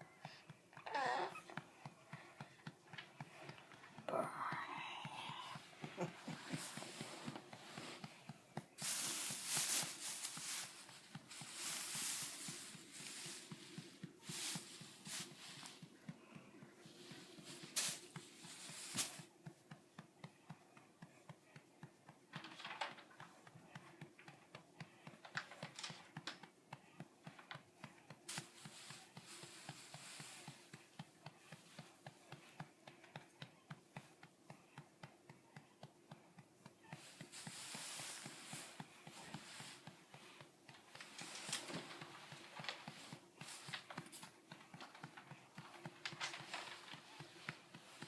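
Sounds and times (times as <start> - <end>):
rustling: 0.7 - 19.4, 36.8 - 48.0.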